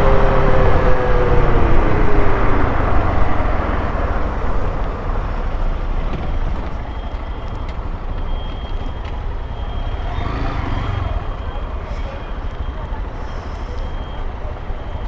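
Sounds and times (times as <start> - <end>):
motorcycle riding: 0.0 - 15.0
wind and road noise: 0.0 - 15.0.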